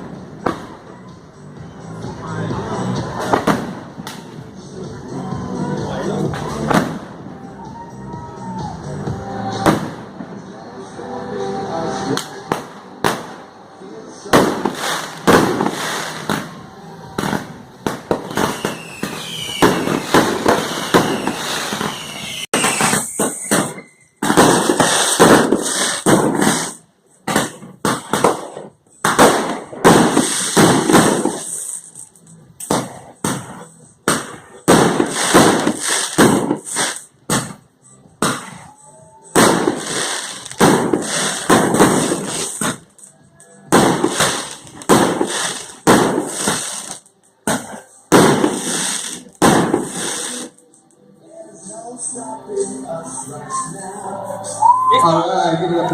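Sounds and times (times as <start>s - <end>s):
fireworks bursts and crackling: 0.0s - 51.0s
firework whistling glides: 18.2s - 26.8s.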